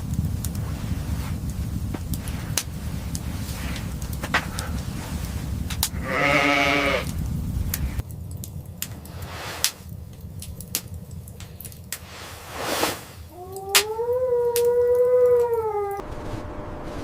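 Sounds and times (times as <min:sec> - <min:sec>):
low rumble: 0:00.0 - 0:17.0
wavering animal call: 0:13.3 - 0:16.0.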